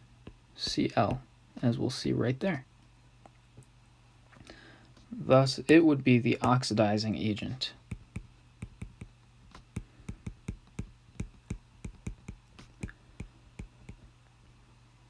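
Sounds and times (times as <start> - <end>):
faint low hum: 0.0 - 15.0
pen tapping while writing: 7.8 - 14.1.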